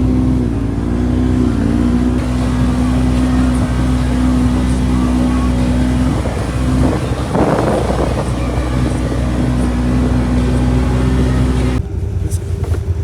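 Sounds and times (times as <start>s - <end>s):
utility vehicle engine running: 0.0s - 13.0s
rush of noise: 2.2s - 11.8s.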